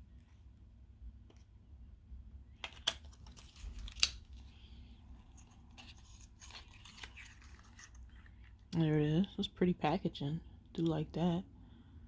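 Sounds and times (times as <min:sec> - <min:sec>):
packaging rustling: 0:05.2 - 0:08.6.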